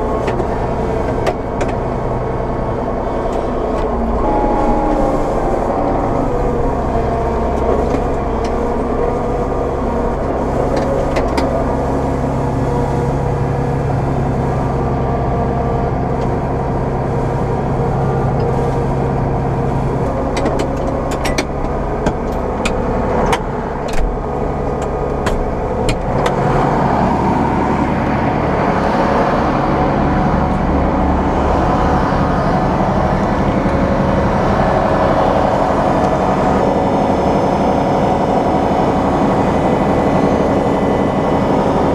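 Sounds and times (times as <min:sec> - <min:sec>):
combine harvester running: 0:00.0 - 0:41.9
sharp clicks and knocks: 0:20.4 - 0:24.2, 0:24.8 - 0:26.4.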